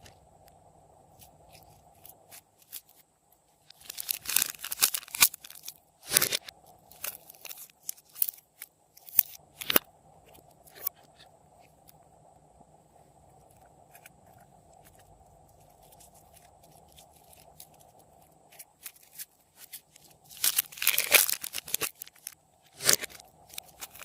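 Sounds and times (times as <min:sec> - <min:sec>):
slime with candy crunching: 0:03.7 - 0:09.8, 0:14.8 - 0:24.0.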